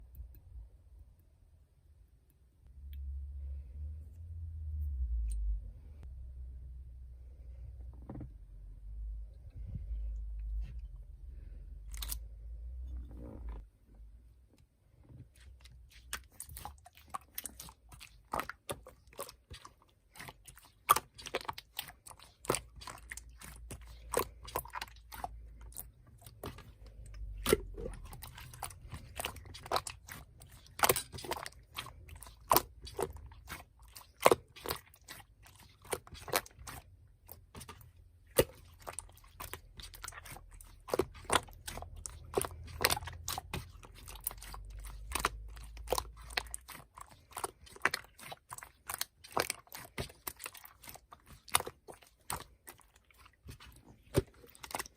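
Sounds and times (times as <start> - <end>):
slime squished by hand: 15.2 - 54.9.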